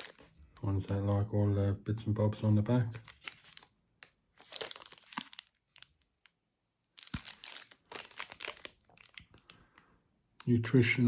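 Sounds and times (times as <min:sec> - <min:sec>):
wrapper crinkling: 0:00.0 - 0:00.3, 0:02.9 - 0:03.7, 0:04.3 - 0:06.3, 0:07.0 - 0:09.6.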